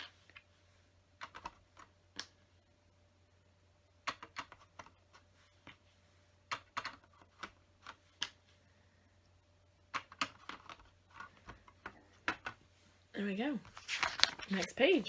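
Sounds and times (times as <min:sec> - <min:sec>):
plastic bricks clicking: 0:01.2 - 0:02.4, 0:06.5 - 0:08.4, 0:09.9 - 0:12.6.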